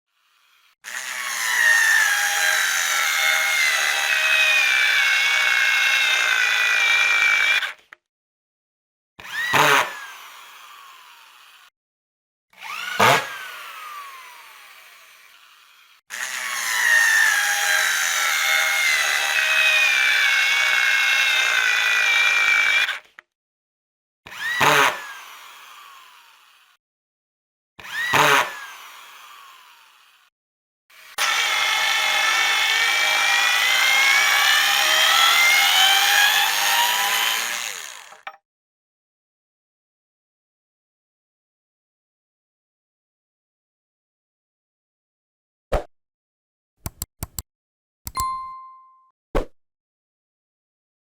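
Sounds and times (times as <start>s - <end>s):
electric screwdriver motor running: 12.6s - 21.5s, 31.0s - 38.3s.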